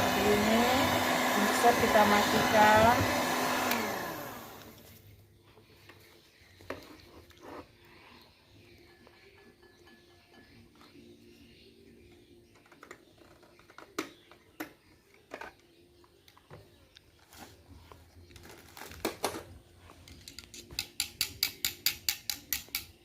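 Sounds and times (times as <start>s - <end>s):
utensil clicking against bowl: 20.3s - 23.0s.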